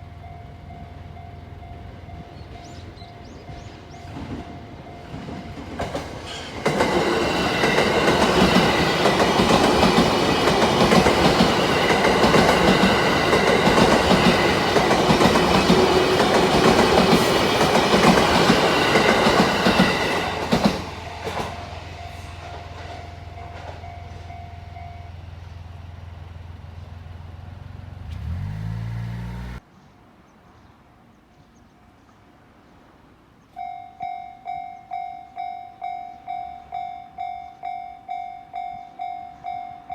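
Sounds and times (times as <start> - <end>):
crossing warning bell ringing: 0.0 - 25.6, 33.5 - 39.9
train passing: 0.0 - 30.2.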